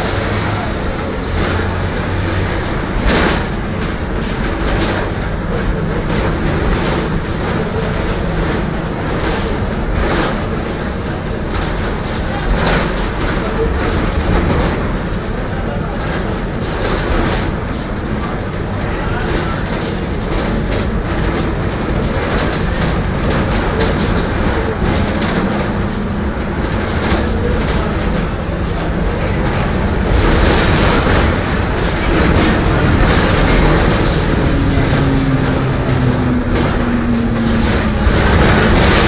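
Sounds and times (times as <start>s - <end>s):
bus engine and road rumble: 0.0s - 39.0s
rattles and clicks: 0.0s - 39.0s
low differential hum: 22.7s - 39.0s.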